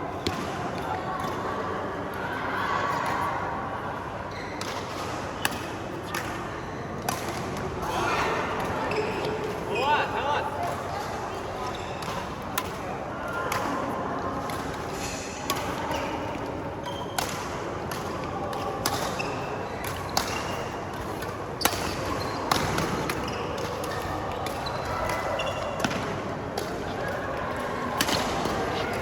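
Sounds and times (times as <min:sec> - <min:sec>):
court shoes squeaking: 0:04.3 - 0:07.6, 0:08.7 - 0:10.2, 0:11.5 - 0:12.4, 0:16.8 - 0:17.5, 0:18.6 - 0:29.0
racket hitting shuttlecock: 0:17.2 - 0:27.1, 0:27.9 - 0:29.0.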